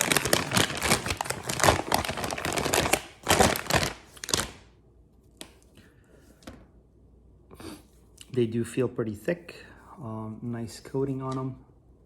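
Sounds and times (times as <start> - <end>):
plastic bag crinkling: 0.0 - 4.7.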